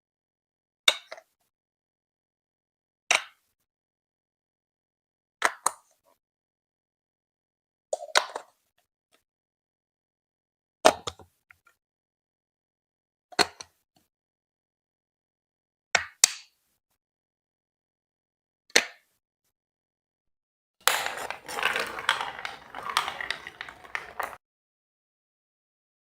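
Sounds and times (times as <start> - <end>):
plastic bricks clacking: 20.8 - 24.4.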